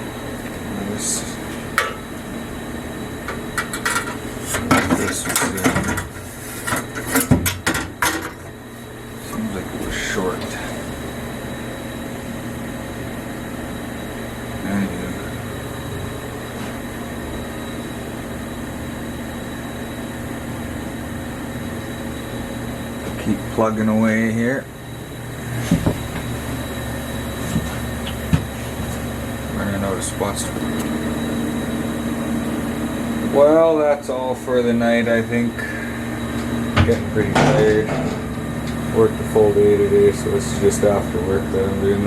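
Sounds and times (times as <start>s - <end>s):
heater humming: 0.0s - 42.0s
sharp knocks and clattering clicks: 3.3s - 8.5s, 25.6s - 26.3s, 27.5s - 29.0s, 36.8s - 38.8s.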